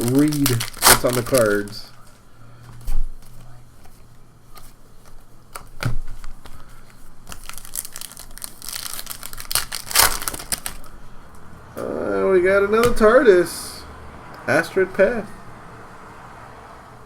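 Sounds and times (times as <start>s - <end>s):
foil wrapper crinkling and tearing: 0.0s - 1.9s, 7.2s - 10.9s.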